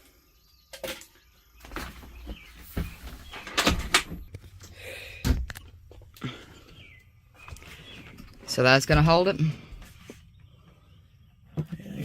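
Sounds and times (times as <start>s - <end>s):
knocks and clunks of parts: 0.7s - 6.3s.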